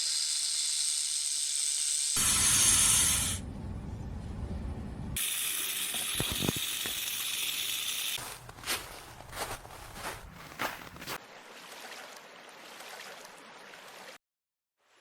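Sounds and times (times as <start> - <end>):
snake hissing: 0.0 - 3.4.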